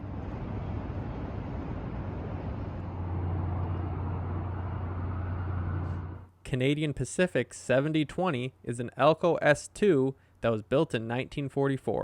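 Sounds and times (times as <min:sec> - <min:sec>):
city traffic rush: 0:00.0 - 0:06.3
low engine hum: 0:00.0 - 0:06.3.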